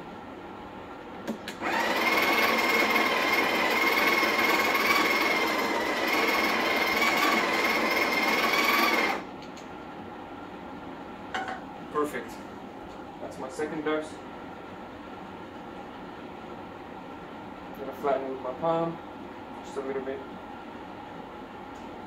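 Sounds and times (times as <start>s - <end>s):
coffee grinder motor whine: 1.6s - 9.3s.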